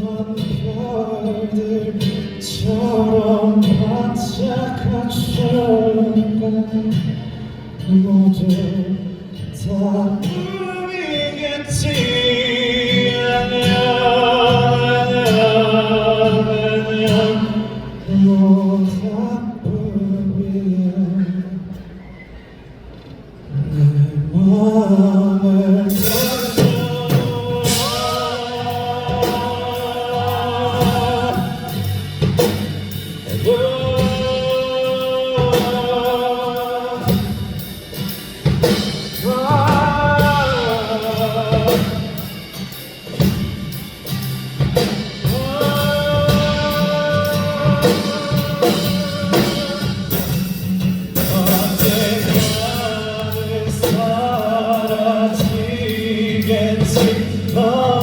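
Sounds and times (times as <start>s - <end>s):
man singing long notes: 0.0s - 21.7s, 23.5s - 37.7s, 39.0s - 42.3s, 45.2s - 58.0s
band playing with drums: 11.6s - 17.8s, 25.9s - 58.0s.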